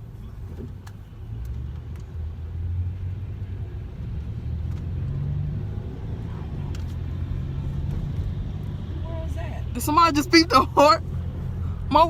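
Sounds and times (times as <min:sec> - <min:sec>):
car engine and road rumble: 0:00.0 - 0:12.0.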